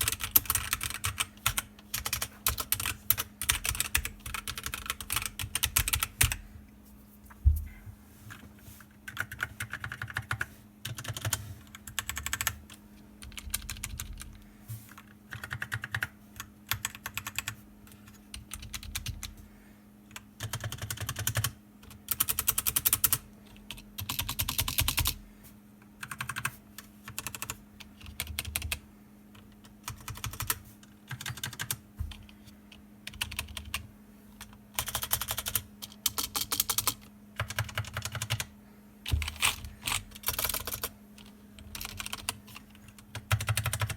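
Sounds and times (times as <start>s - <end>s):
computer keyboard typing: 0.0s - 6.4s, 9.1s - 12.6s, 13.2s - 14.4s, 15.0s - 19.3s, 20.1s - 25.2s, 26.0s - 26.5s, 27.1s - 28.8s, 29.4s - 32.3s, 33.0s - 38.5s, 39.1s - 43.9s
faint steady hum: 0.0s - 43.9s.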